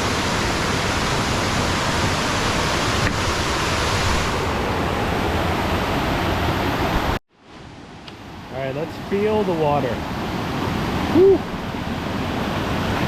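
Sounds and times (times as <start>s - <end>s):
waterfall rushing: 0.0s - 7.2s.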